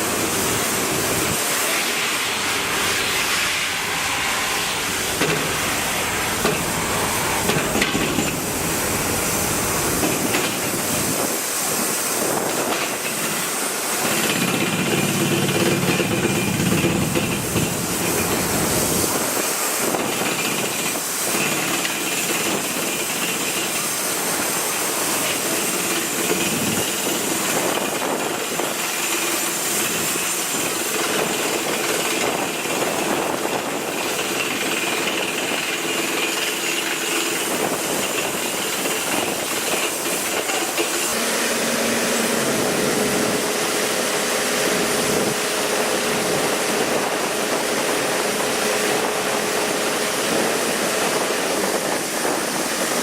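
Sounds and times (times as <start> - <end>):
loud steady hiss: 0.0 - 53.0.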